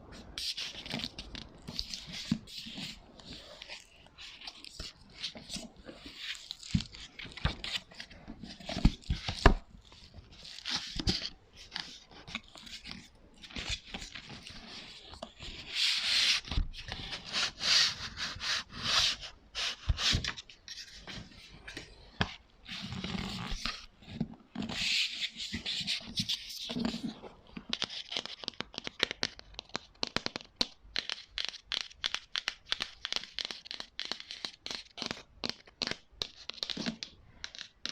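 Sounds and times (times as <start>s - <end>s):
rubbing or scratching: 10.1s - 21.4s.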